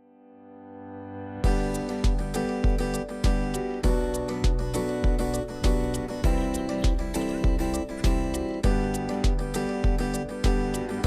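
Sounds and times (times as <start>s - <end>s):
low kick drum thump: 1.5s - 10.7s
acoustic guitar strumming: 1.5s - 11.0s.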